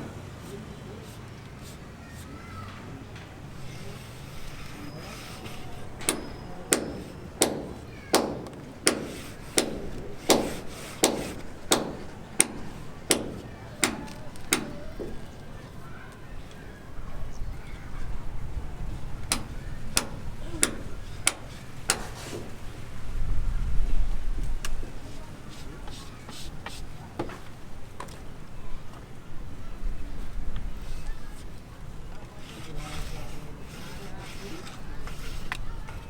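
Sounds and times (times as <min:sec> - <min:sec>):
hammer blows ringing: 0:03.5 - 0:15.5, 0:19.3 - 0:22.7.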